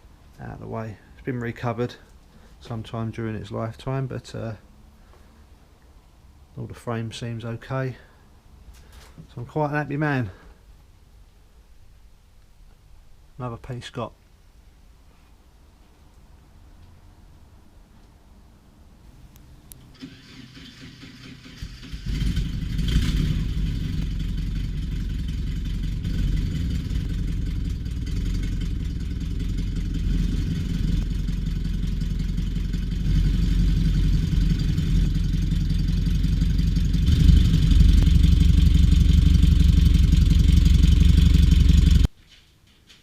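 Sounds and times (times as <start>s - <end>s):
engine running: 19.9s - 42.1s.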